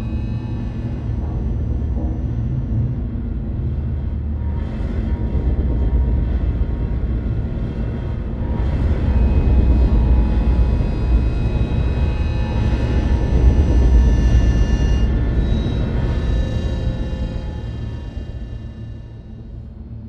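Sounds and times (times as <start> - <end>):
deep rumbling drone: 0.0 - 20.0.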